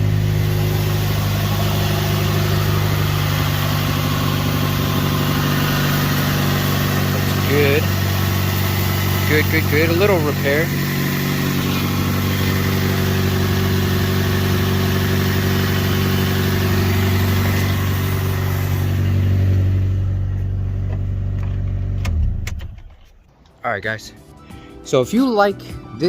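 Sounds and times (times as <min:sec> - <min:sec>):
car engine idling: 0:00.0 - 0:23.3.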